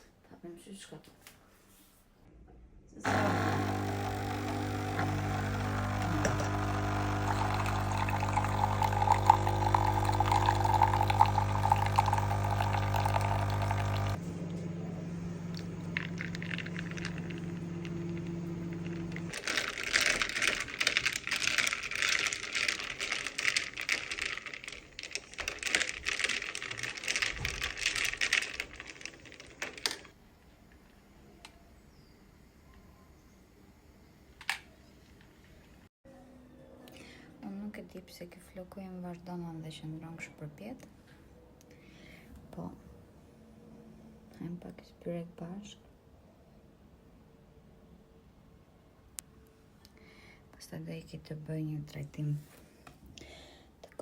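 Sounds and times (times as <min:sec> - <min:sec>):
machine humming: 0:03.0 - 0:30.1
water pouring: 0:03.1 - 0:14.2, 0:15.3 - 0:30.1.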